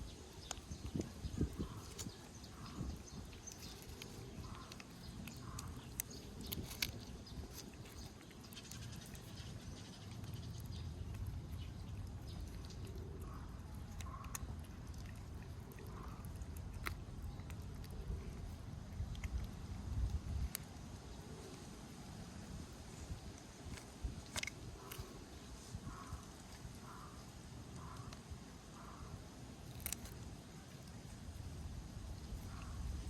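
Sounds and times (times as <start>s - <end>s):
steady low rumble: 0.0s - 21.3s
small clicks: 3.4s - 9.4s, 23.7s - 25.1s, 29.6s - 30.2s.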